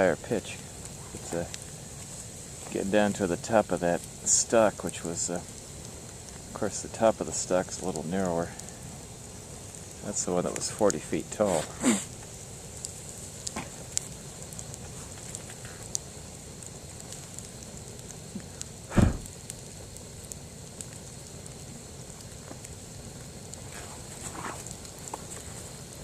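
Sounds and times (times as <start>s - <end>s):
campfire crackling and hissing: 0.0s - 26.0s
bamboo bursting with a sharp pop: 18.4s - 19.5s.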